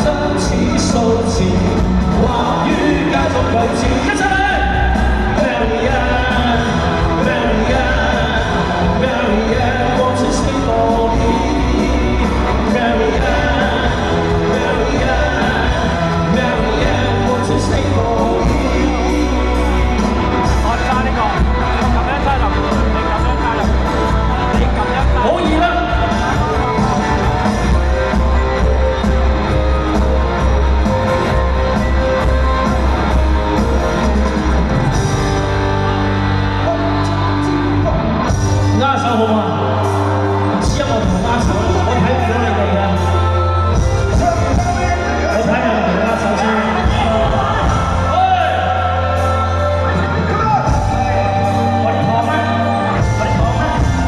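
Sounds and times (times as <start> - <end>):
person singing: 0.0 - 34.0, 35.0 - 54.0
pop-rock band playing: 0.0 - 54.0.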